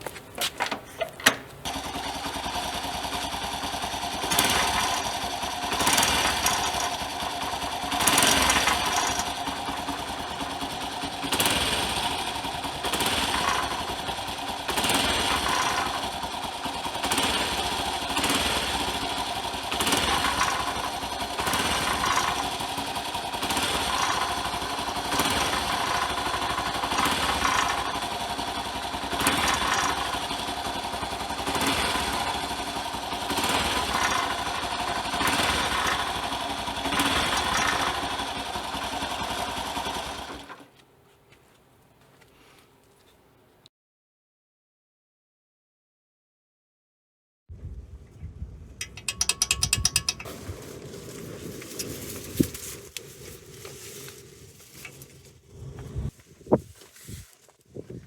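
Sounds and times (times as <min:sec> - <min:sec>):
small motorcycle engine running: 0:00.1 - 0:40.7, 0:48.8 - 0:56.2
sharp click: 0:48.8 - 0:50.3.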